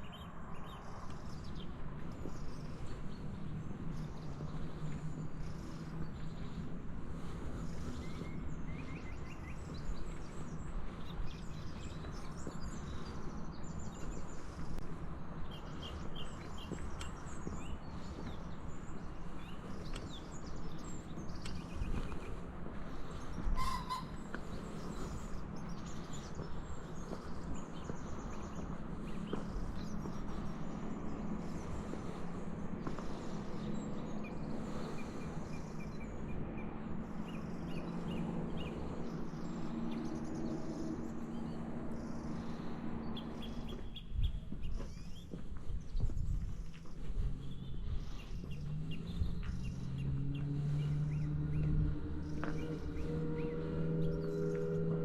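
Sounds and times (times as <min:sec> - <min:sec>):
small birds chirping: 0:00.0 - 0:55.0
loud bird call: 0:23.6 - 0:24.3.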